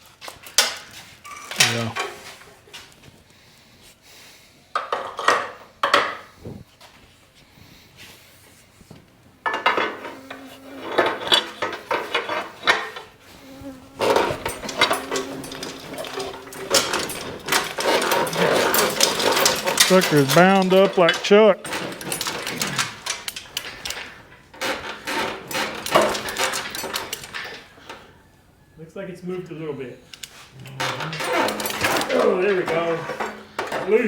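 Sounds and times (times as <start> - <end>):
power tool buzzing: 9.6 - 26.4.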